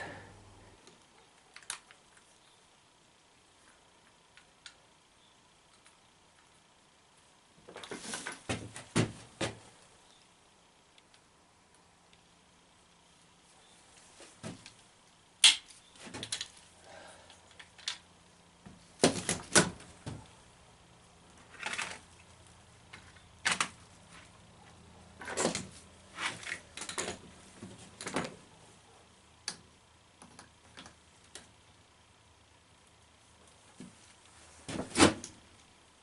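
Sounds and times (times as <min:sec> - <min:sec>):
faint steady hum: 0:00.0 - 0:36.0
clicks and knocks of handling parts: 0:00.8 - 0:02.3, 0:14.3 - 0:20.3, 0:21.3 - 0:24.4, 0:25.1 - 0:28.4, 0:29.4 - 0:31.6.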